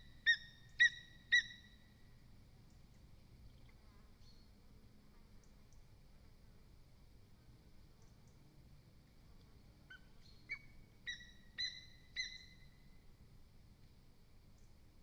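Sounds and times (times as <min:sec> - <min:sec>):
eagle calling: 0:00.0 - 0:01.8, 0:09.9 - 0:12.8.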